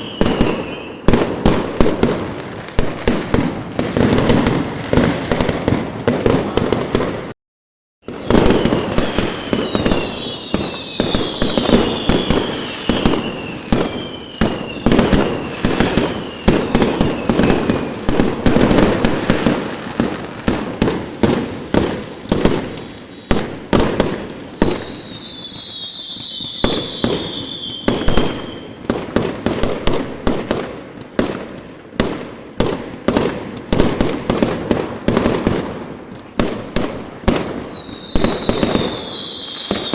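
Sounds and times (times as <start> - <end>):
fireworks bangs: 0.0 - 7.4, 8.0 - 39.9
high falling whistles: 8.1 - 18.0, 24.4 - 28.8, 37.6 - 39.9.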